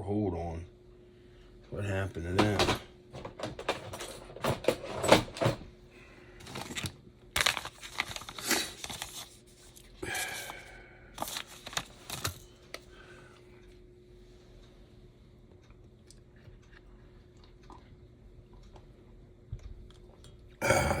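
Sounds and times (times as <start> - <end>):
faint steady hum: 0.0 - 21.0
rummaging through small parts: 2.4 - 5.6, 6.4 - 9.3.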